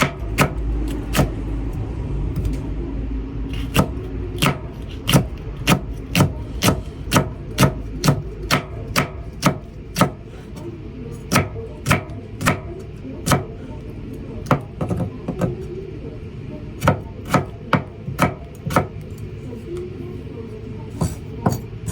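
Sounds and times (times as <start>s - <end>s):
knife slicing peppers on cutting board: 0.0s - 1.4s, 3.5s - 13.7s, 16.8s - 19.9s, 20.9s - 21.9s
low steady hum: 0.0s - 21.9s.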